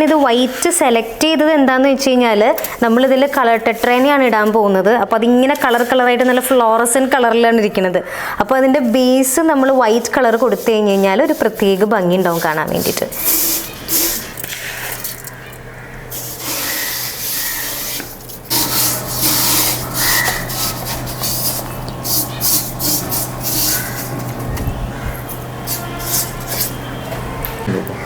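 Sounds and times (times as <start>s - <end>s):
steady low hum: 8.2s - 28.0s
sand rustling and scraping: 9.6s - 14.8s.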